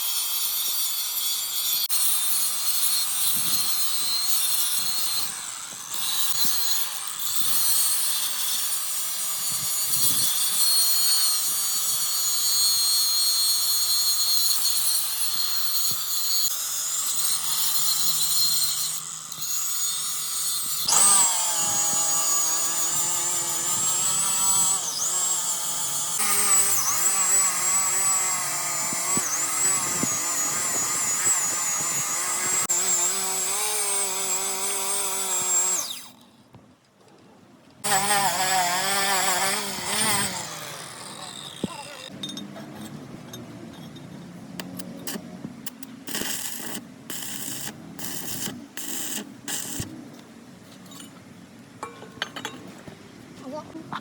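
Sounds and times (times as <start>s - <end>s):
power tool whining: 0.0s - 36.2s, 37.8s - 42.2s.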